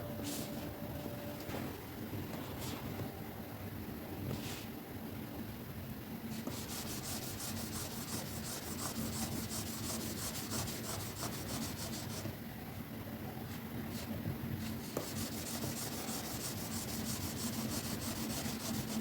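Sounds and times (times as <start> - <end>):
white noise: 0.0 - 19.0
stylus scratching on drawing tablet: 6.3 - 12.3, 14.6 - 19.0.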